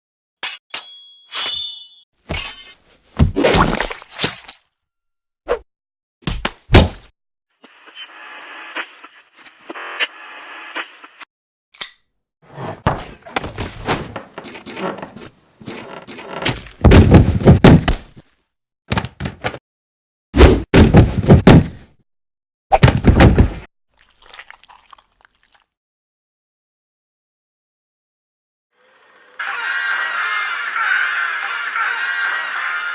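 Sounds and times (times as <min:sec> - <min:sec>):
thuds and knocks: 0:16.4 - 0:18.2, 0:20.4 - 0:21.9, 0:22.8 - 0:23.7.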